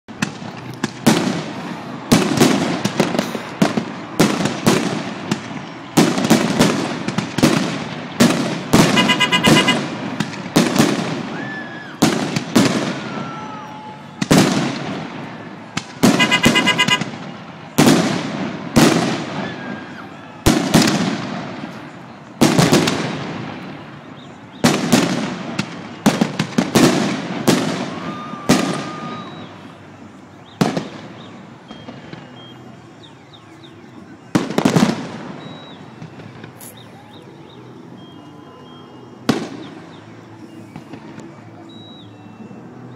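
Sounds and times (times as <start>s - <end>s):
fireworks bursting with booms: 0.1s - 37.0s, 39.2s - 42.0s
pulsing high beep: 9.0s - 9.8s, 35.4s - 35.9s.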